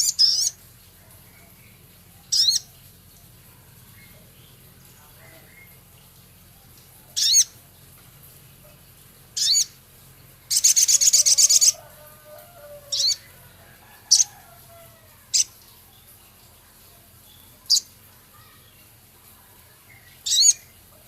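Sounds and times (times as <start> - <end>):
bird singing high chirps: 0.0 - 0.6, 2.3 - 2.7, 7.2 - 7.6, 9.4 - 9.8, 10.5 - 11.8, 12.9 - 13.4, 19.9 - 20.8
rough rapid bird trill: 2.3 - 2.7, 7.2 - 7.6, 9.3 - 9.8, 10.4 - 11.9, 20.0 - 20.8.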